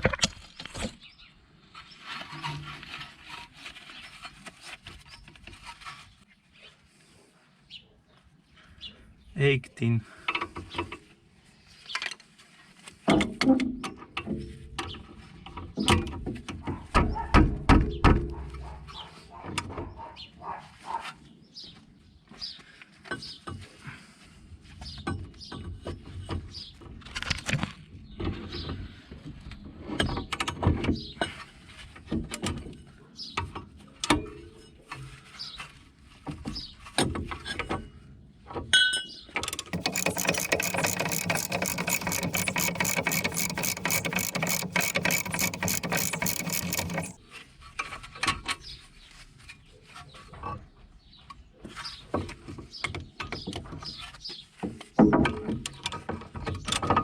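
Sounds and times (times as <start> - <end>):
power wrench ratcheting: 39.8 - 47.2.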